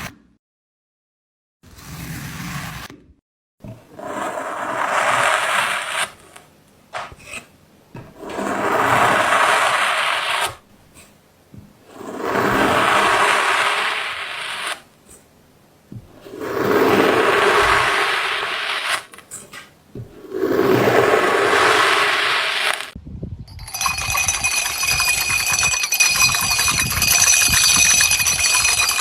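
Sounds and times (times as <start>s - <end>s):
long scraping strokes: 11.8s - 15.3s, 16.1s - 23.0s, 23.6s - 29.0s.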